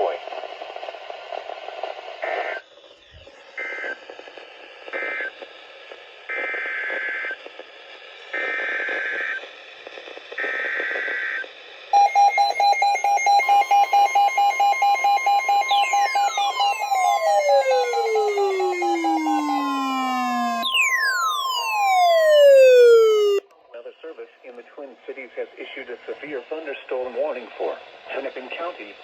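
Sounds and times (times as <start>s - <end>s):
radio hiss: 0.0s - 6.3s, 22.7s - 29.0s
alert data bursts: 12.0s - 23.4s
falling pitch tones: 12.0s - 23.4s
pulsing alert tone: 12.0s - 23.4s.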